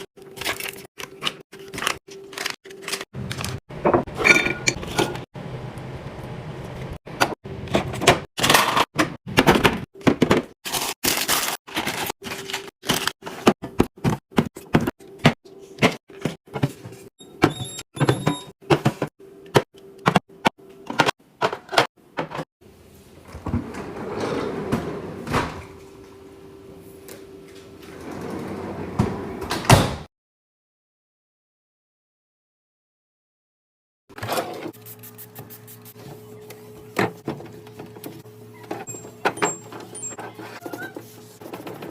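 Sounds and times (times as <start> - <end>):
drawers sliding and thudding: 23.2 - 25.8, 27.8 - 30.1.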